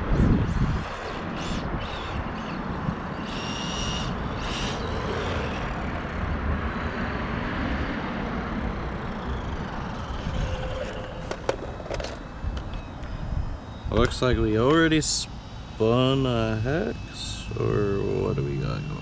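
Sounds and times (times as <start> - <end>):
electric motor whine: 0.0 - 19.0
toy truck rolling noise: 10.0 - 12.8.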